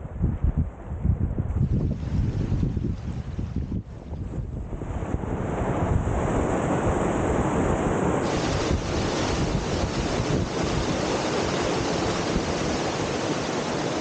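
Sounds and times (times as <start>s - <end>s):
waterfall rushing: 8.2s - 14.0s.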